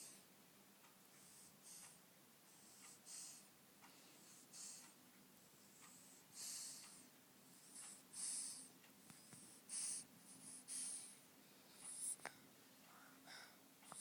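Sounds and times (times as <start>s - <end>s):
faint hissy snoring breaths: 0.0s - 14.0s.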